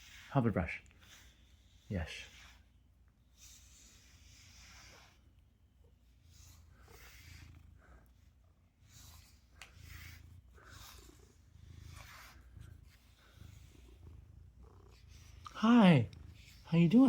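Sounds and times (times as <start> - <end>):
brush swishing through fur: 0.0 - 5.4, 8.7 - 14.0
cat purring faintly: 0.0 - 17.0.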